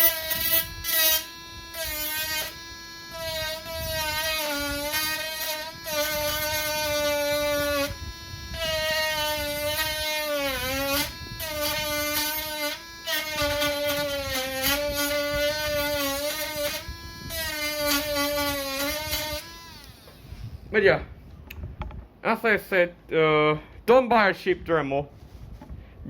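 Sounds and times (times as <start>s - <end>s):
rotary tool sanding whine: 0.0s - 20.7s.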